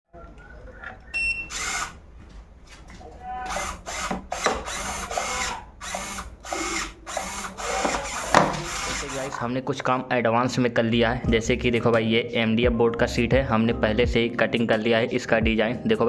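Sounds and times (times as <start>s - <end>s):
small electric motor whirring in bursts: 1.5s - 2.0s, 3.5s - 9.3s.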